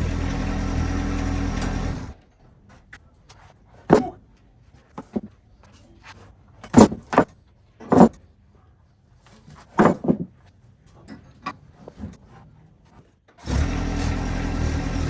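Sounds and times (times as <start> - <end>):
sharp knocks and clunks: 9.7 - 10.4.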